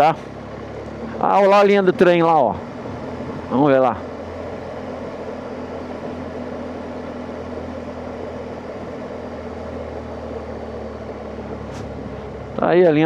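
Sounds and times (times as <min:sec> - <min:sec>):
motorcycle engine running at low revs: 0:00.0 - 0:13.0.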